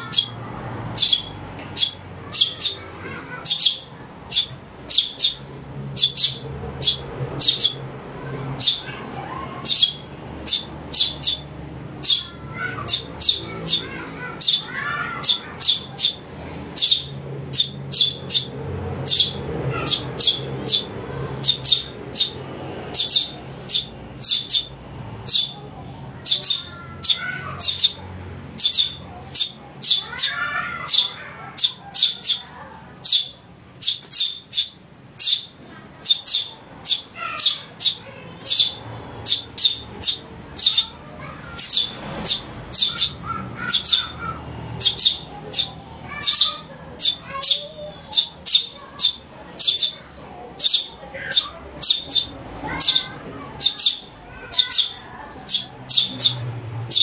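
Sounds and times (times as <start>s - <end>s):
sparrow chicks chirping: 0.0s - 57.0s.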